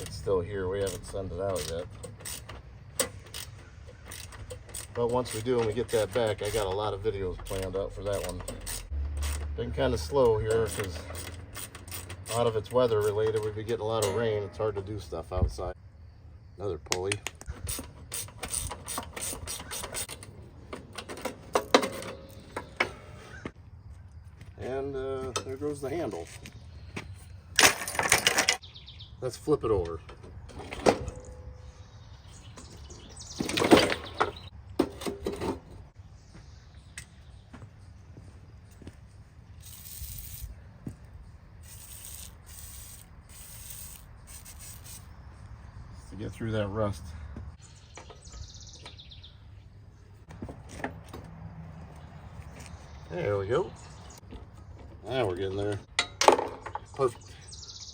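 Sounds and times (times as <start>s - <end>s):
ratchet wrench clicking: 0.8s - 6.8s, 7.4s - 9.6s, 10.2s - 13.6s, 17.6s - 20.3s, 39.6s - 40.5s, 41.6s - 45.1s
metal clank: 10.6s - 14.9s, 55.9s - 57.0s
short hissing strokes on rust: 39.6s - 40.6s, 41.6s - 45.2s.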